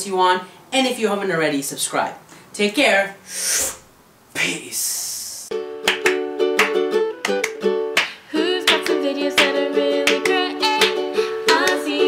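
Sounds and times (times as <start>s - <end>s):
plucked string melody: 5.5s - 12.0s.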